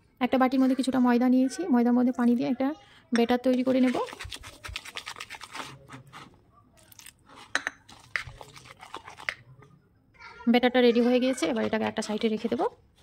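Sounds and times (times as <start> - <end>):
utensil stirring batter in bowl: 3.4 - 9.7.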